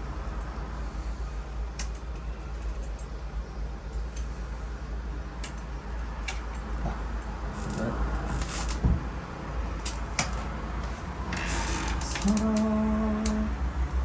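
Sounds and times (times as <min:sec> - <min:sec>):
steady low rumble: 0:00.0 - 0:14.0
metal tools clicking in a lock: 0:01.8 - 0:03.2.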